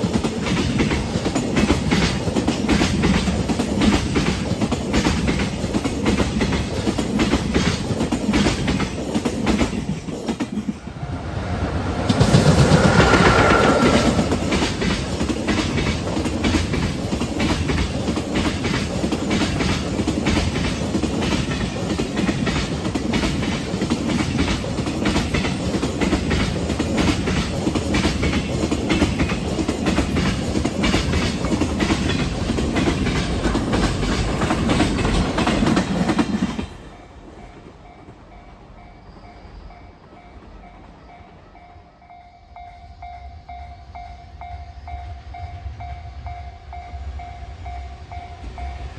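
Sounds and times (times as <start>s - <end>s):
train wheels clattering over rail joints: 0.0s - 10.8s, 11.4s - 36.9s.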